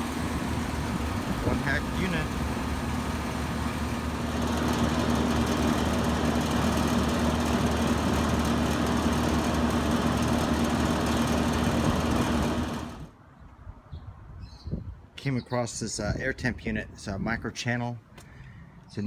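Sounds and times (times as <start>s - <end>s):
heat pump compressor hum: 0.0s - 13.1s
outdoor fan rushing: 0.0s - 13.2s.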